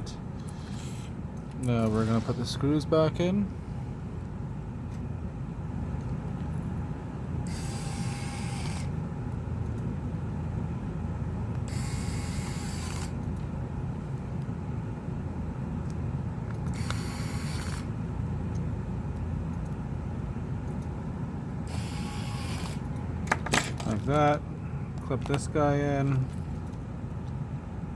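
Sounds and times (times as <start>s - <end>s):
steady low hum: 0.0s - 27.9s
small electric screwdriver running: 7.5s - 8.9s, 11.7s - 13.2s, 16.7s - 17.9s, 21.7s - 22.9s.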